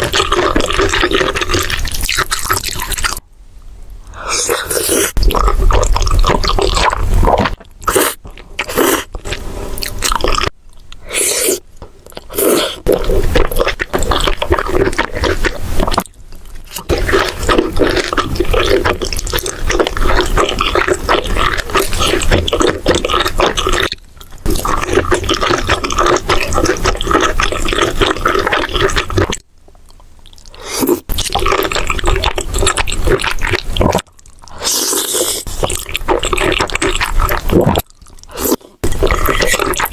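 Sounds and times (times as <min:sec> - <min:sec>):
wet chewing and crunching: 0:00.0 - 0:03.2, 0:04.4 - 0:39.9
slurping food: 0:04.3 - 0:11.6, 0:12.2 - 0:16.1, 0:30.6 - 0:39.9.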